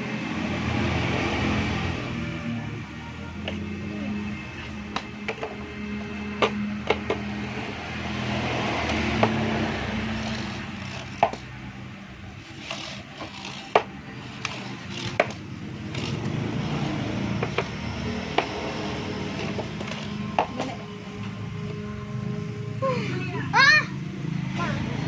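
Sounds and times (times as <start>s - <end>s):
tools knocking and clicking: 4.9s - 7.4s, 10.2s - 11.5s, 12.6s - 16.3s, 17.3s - 18.6s, 19.3s - 20.9s
scraping rasp: 8.9s - 11.5s, 12.4s - 16.3s.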